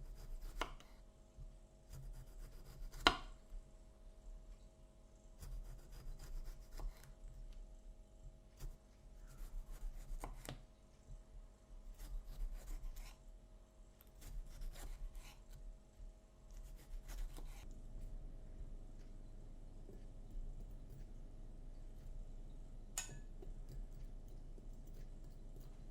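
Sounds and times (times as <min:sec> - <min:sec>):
knife chopping on cutting board: 0:00.0 - 0:00.9, 0:01.9 - 0:03.4, 0:05.4 - 0:07.1, 0:08.6 - 0:10.6, 0:11.9 - 0:13.1, 0:14.2 - 0:15.6, 0:16.6 - 0:17.6
faint steady hum: 0:00.0 - 0:25.9.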